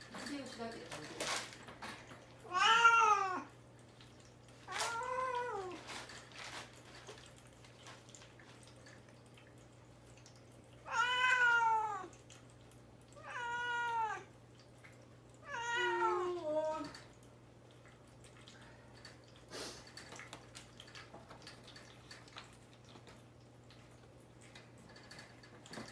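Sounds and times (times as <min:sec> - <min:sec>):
young cat meowing: 0:02.5 - 0:03.5, 0:04.7 - 0:05.8, 0:10.9 - 0:12.2, 0:13.2 - 0:14.3, 0:15.4 - 0:17.0.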